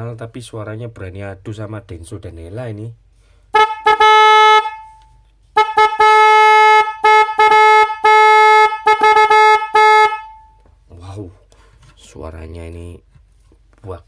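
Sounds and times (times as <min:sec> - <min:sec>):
car horn honking: 0:03.5 - 0:10.7.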